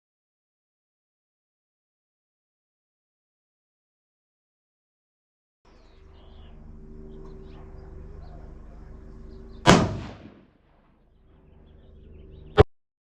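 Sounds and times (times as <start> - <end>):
steady low hum: 5.7 - 12.7
rifle shot: 9.6 - 10.5.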